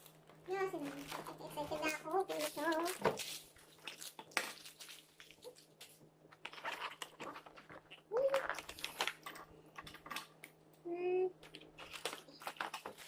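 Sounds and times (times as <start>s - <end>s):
faint steady hum: 0.0s - 13.0s
packaging clicks and rustles: 6.4s - 10.4s, 11.4s - 13.0s.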